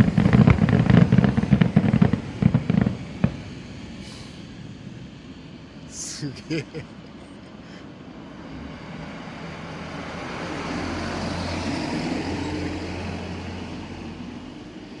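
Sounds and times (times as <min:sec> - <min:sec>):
vehicle passing with low hum: 0:06.7 - 0:15.0.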